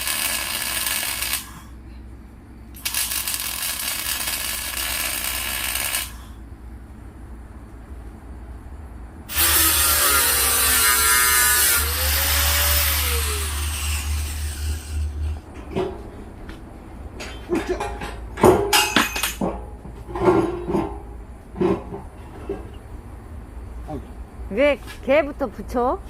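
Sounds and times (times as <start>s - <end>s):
angle grinder on steel: 0.0s - 1.5s, 2.8s - 6.2s, 9.3s - 15.6s
grinder spinning down whine: 9.3s - 15.3s
metal clanks of steel: 13.6s - 22.8s.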